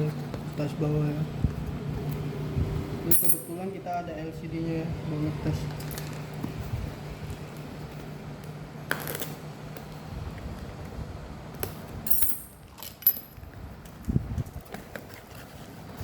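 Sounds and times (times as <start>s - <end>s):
low steady hum: 0.0s - 14.7s.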